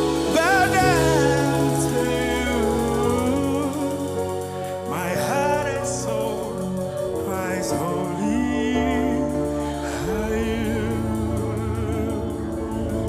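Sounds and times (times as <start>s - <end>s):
band chords and bass: 0.0s - 13.0s
singer holding long notes: 0.0s - 13.0s.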